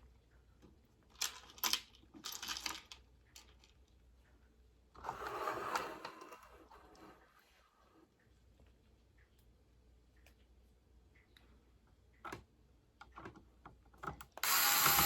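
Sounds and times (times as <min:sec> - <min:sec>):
screws and plastic parts clicking: 0:14.0 - 0:15.0.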